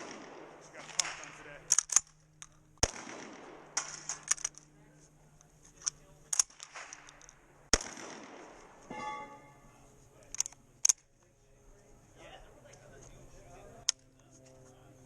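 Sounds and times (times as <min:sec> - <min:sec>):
loud shotgun shots: 0:00.0 - 0:01.5, 0:02.8 - 0:04.3, 0:07.7 - 0:08.8
sharp clicks: 0:00.9 - 0:04.7, 0:05.4 - 0:07.9, 0:10.3 - 0:11.1.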